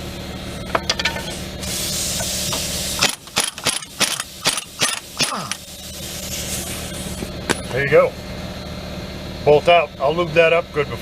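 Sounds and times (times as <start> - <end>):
steady low hum: 0.0 - 11.0
steel tools clinking on bolt: 3.0 - 5.6.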